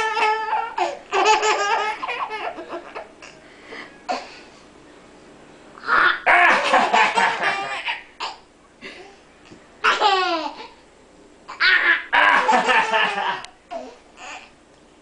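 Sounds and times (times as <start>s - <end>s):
laughter: 12.2s - 13.5s.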